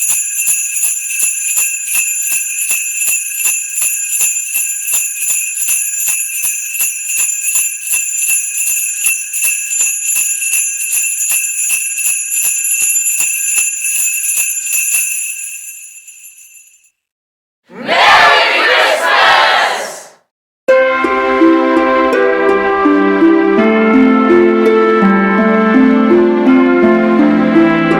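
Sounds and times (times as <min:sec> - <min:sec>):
sleigh bells shaken: 0:00.0 - 0:16.9
crowd voices: 0:17.7 - 0:20.1.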